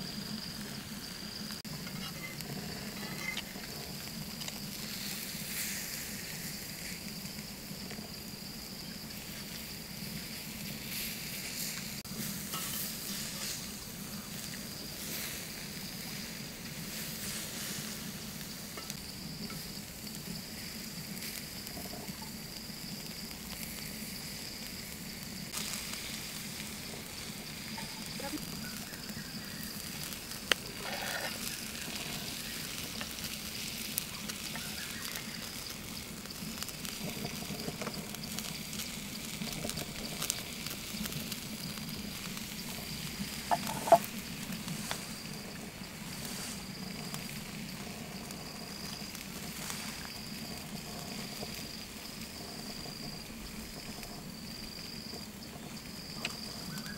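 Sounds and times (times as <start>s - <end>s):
liver sizzling on hot stone: 0.0s - 56.9s.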